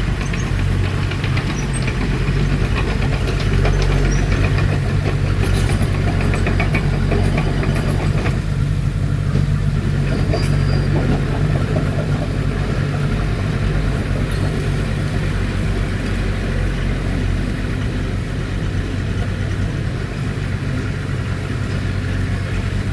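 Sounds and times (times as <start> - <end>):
rapid light clatter: 0.0 - 16.3
diesel engine running: 0.0 - 22.9.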